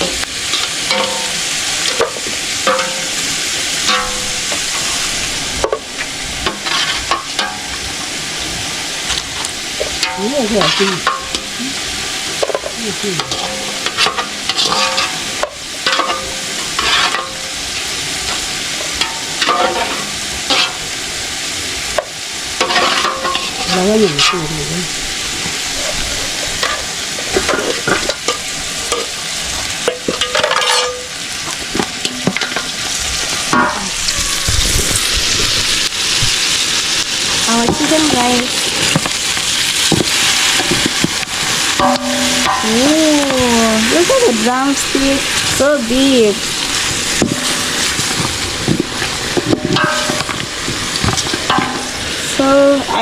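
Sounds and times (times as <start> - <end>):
chicken sizzling in a pan: 0.0 - 53.0
utensil scraping a pan: 0.4 - 7.7, 9.9 - 11.5, 12.4 - 21.0, 22.0 - 24.6, 29.8 - 35.8, 46.6 - 52.2.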